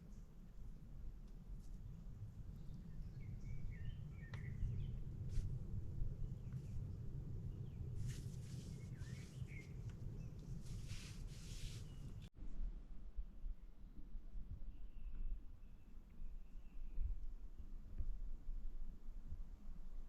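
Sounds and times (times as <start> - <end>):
low rumble: 1.6 - 13.8
bird chirps: 2.6 - 5.0, 8.4 - 12.2
brief rustle: 8.0 - 12.3.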